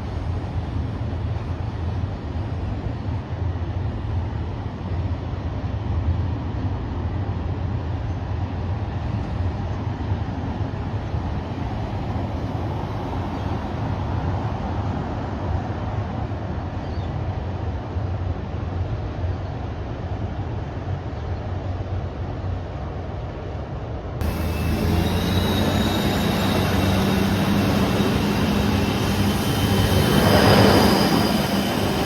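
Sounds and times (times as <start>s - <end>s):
vehicle rumble in motion: 24.2s - 32.0s.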